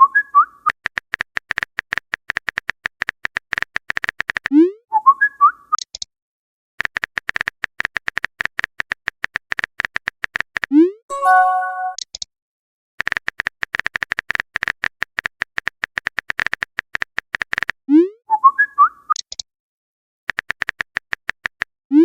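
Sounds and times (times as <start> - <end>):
phone keyboard tapping clicks: 0.8 - 4.5, 13.0 - 17.8, 20.3 - 21.7
brief chime chord: 11.1 - 12.0
message alert swoop with chirps: 11.1 - 12.0.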